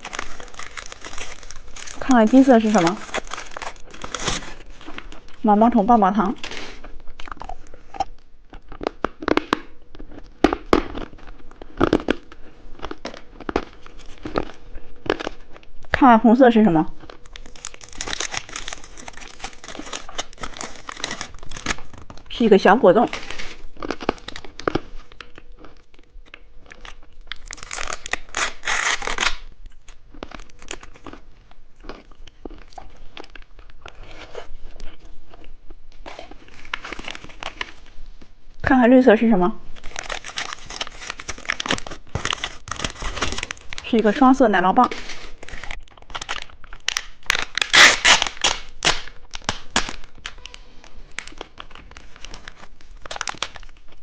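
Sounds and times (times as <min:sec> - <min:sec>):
packaging tearing: 0:00.0 - 0:05.4, 0:17.1 - 0:22.3, 0:23.1 - 0:31.2, 0:36.0 - 0:37.8, 0:39.7 - 0:44.2, 0:44.9 - 0:54.0
plastic wrapper crinkling: 0:00.0 - 0:16.0, 0:16.9 - 0:38.0, 0:39.6 - 0:54.0.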